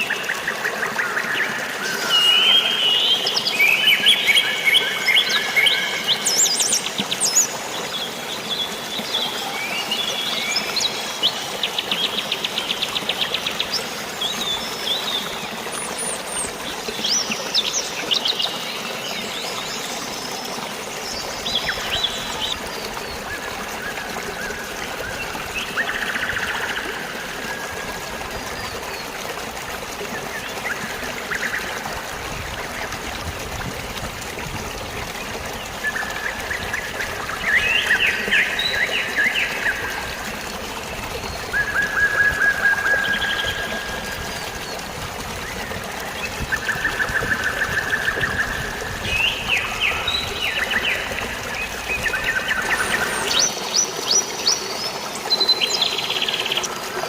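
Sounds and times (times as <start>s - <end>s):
flowing water rushing: 0.0s - 57.0s.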